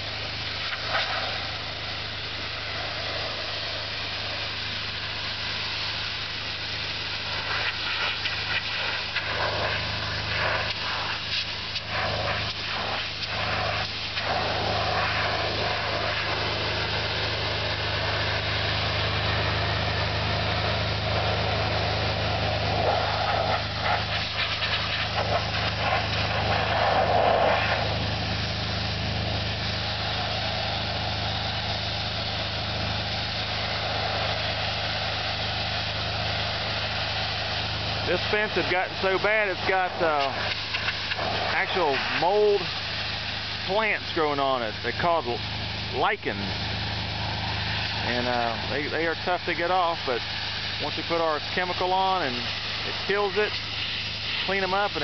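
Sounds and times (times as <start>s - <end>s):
high-pressure spray hissing: 0.0s - 55.0s
pressure washer engine running: 0.0s - 55.0s.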